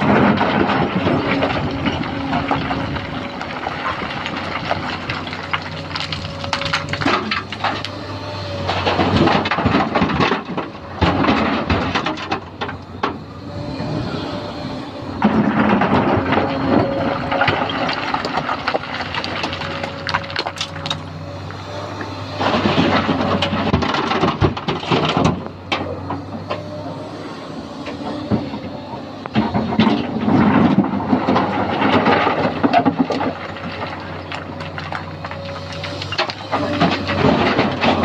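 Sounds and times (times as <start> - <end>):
rocks clattering and knocking: 0.0 - 8.0, 8.6 - 13.2, 15.2 - 21.6, 22.4 - 26.7, 28.2 - 38.0
excavator diesel engine running: 0.0 - 38.0.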